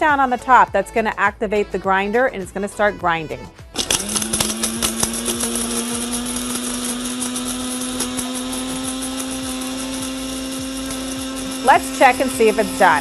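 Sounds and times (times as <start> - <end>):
spice grinder motor hum: 3.7 - 13.0.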